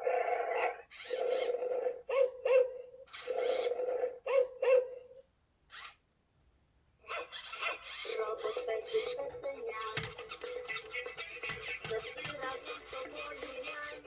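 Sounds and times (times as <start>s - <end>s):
toy robot dog barking sound: 0.0s - 4.9s, 7.0s - 9.2s, 9.8s - 14.0s.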